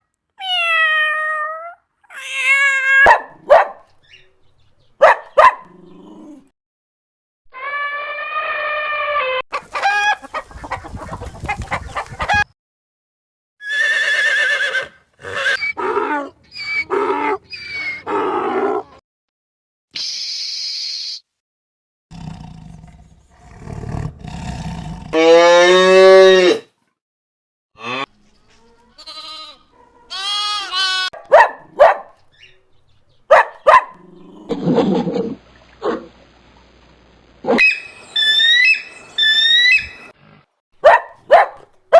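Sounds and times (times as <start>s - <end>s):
animal calls: 37.5s - 40.2s.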